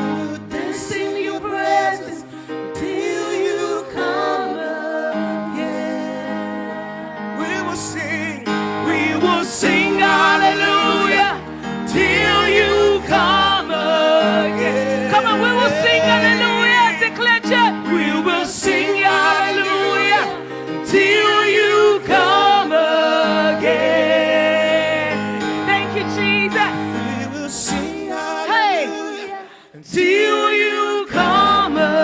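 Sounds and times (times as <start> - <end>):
gospel singing with backing voices: 0.0 - 32.0
keyboard and bass chords: 5.2 - 28.3.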